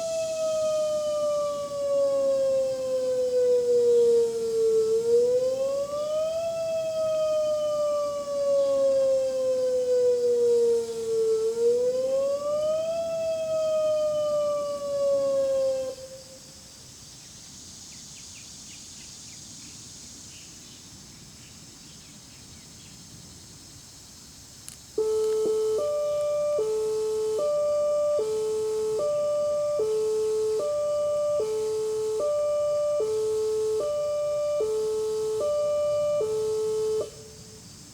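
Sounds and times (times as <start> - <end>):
electronic siren wailing: 0.0 - 16.1, 25.0 - 37.6
hi-lo siren: 0.0 - 16.4, 25.0 - 37.9
faint outdoor background: 0.0 - 37.9.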